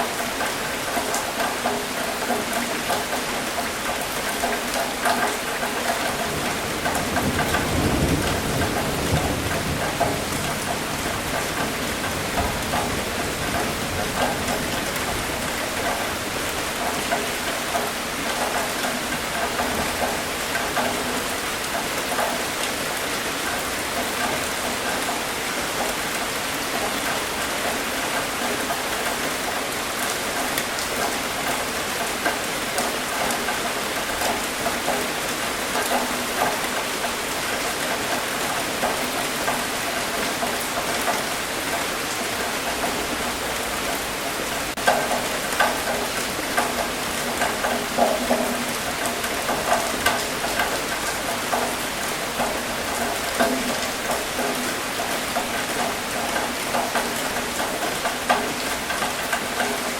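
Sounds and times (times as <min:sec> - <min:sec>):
rain on a hard surface: 0:00.0 - 0:59.9
sharp water drips: 0:00.0 - 0:59.9.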